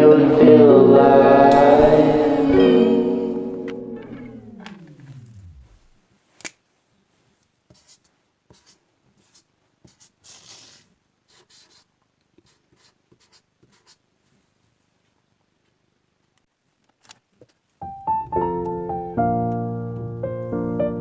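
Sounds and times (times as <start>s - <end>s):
music with downward pitch slide: 0.0s - 6.0s, 17.8s - 21.0s
clicks: 3.4s - 6.6s
pen writing on paper: 7.7s - 14.0s.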